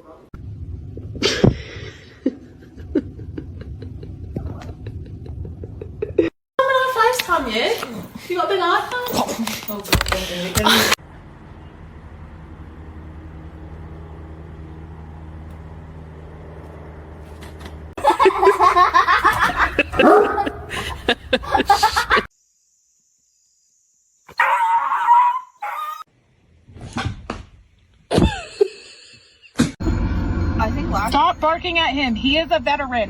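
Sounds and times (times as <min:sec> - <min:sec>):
steady low hum: 0:00.4 - 0:06.3, 0:10.0 - 0:22.2
dog barking and yipping: 0:19.3 - 0:20.9, 0:24.3 - 0:26.0
dog crying: 0:24.3 - 0:26.1.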